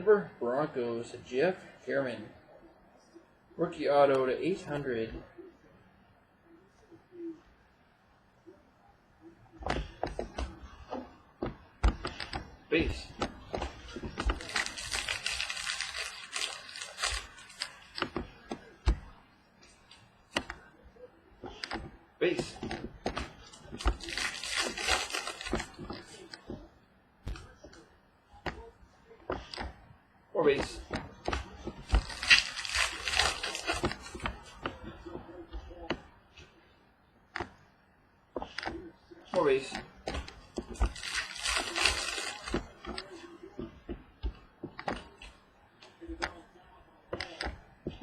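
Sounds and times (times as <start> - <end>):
cards clicking and tapping: 9.6 - 19.1
foil wrapper rustling: 13.9 - 18.2, 23.5 - 26.3, 31.8 - 34.4, 40.6 - 43.1.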